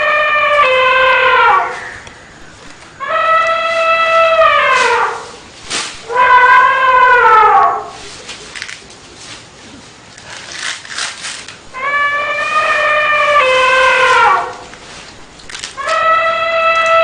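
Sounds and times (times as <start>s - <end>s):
elephant trumpeting: 0.0s - 8.2s, 11.7s - 14.9s, 15.6s - 17.0s.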